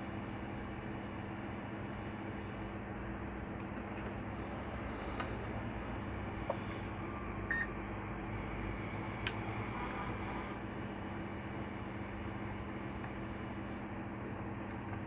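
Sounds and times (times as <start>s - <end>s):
multimeter continuity beep: 0.0s - 2.8s, 4.2s - 6.9s, 7.5s - 7.7s, 8.4s - 13.8s
steady low hum: 0.0s - 14.4s
faint clicks: 9.1s - 9.5s, 10.6s - 13.8s.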